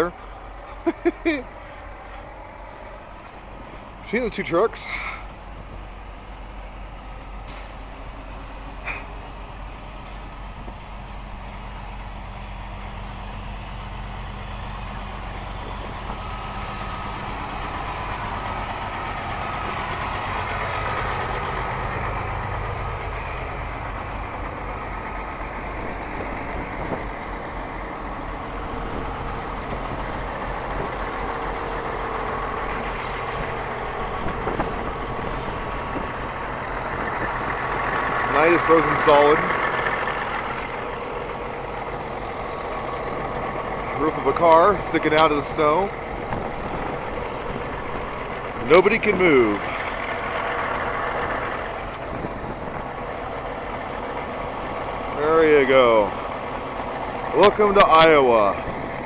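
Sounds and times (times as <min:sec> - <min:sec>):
diesel engines idling: 0:00.0 - 0:59.0
hiss of noise: 0:07.5 - 0:38.7.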